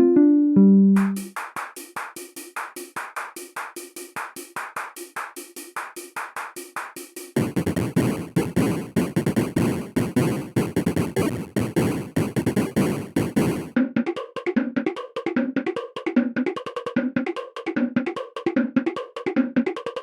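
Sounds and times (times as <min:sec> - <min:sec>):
synthesizer keyboard phrase: 0:00.0 - 0:01.2
drum machine beat: 0:01.0 - 0:19.9
dense noisy electronic layer: 0:07.4 - 0:13.8.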